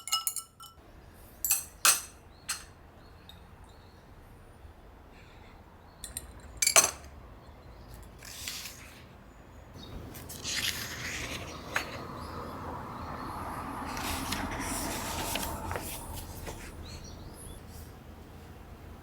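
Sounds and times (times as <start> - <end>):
glass dishware clink: 0.0 - 0.8, 1.4 - 2.7
rubbing or brushing sounds: 9.9 - 12.5, 13.8 - 16.9.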